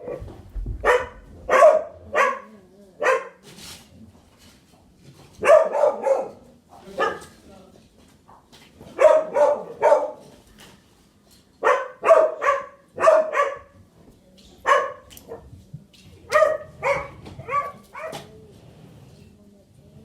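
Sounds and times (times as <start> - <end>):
dogs barking: 0.0 - 3.4, 5.4 - 7.4, 8.9 - 10.3, 11.6 - 13.8, 14.6 - 15.5, 16.3 - 18.3.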